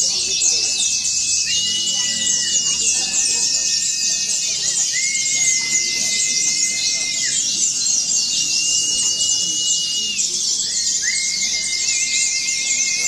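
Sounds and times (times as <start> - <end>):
long whistle-like tones: 8.3 - 13.0.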